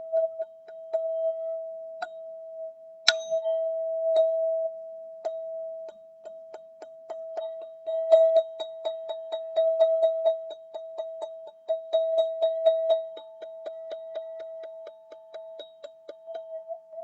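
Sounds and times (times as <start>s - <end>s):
metal tube tapped ringing: 3.1s - 4.4s.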